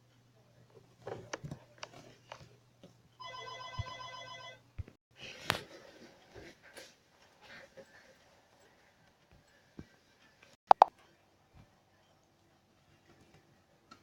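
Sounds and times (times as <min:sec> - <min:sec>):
electronic telephone ringing: 0:03.2 - 0:04.6.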